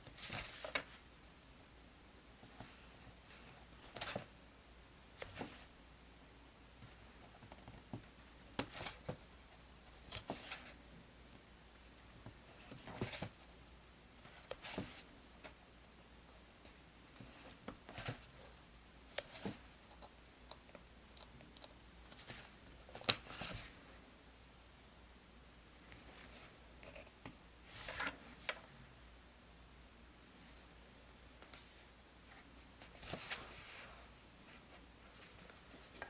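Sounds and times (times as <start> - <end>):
paper and stickers rustling: 9.9 - 10.8, 31.4 - 36.0.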